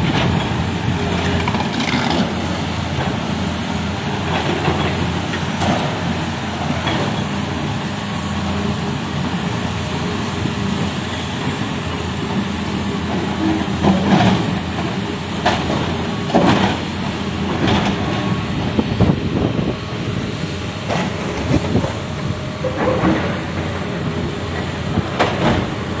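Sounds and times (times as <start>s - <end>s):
excavator diesel engine running: 0.0s - 26.0s
stone blocks knocking and scraping: 1.2s - 2.4s.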